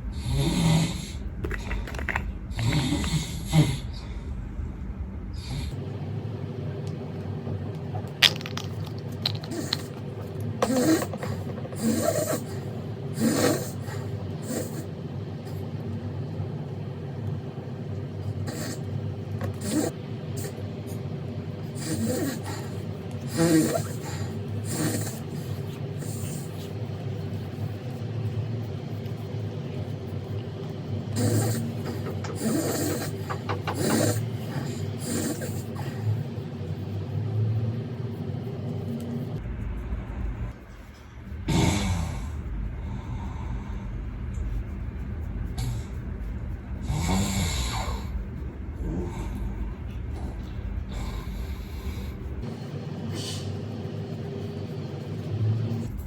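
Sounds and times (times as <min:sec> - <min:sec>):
steady low hum: 0:00.0 - 0:56.0
man snoring: 0:00.1 - 0:01.8, 0:02.5 - 0:04.1, 0:10.6 - 0:14.9, 0:18.4 - 0:20.6, 0:21.8 - 0:26.4, 0:31.1 - 0:36.2, 0:41.5 - 0:43.3, 0:46.8 - 0:48.2.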